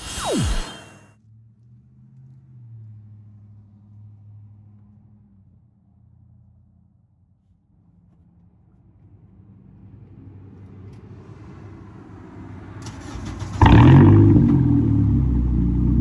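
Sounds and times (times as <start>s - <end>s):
low building sound: 0.0s - 1.1s
car engine starting and running: 12.8s - 16.0s.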